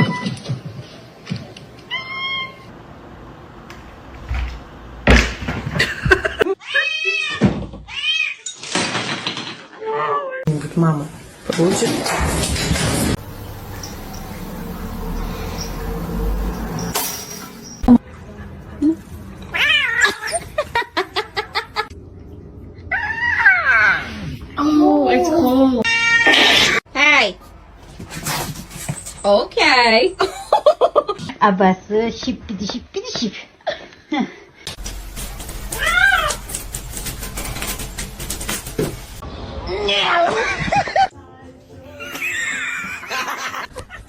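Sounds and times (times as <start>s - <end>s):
cat yowling: 22.9s - 24.1s, 35.7s - 36.4s.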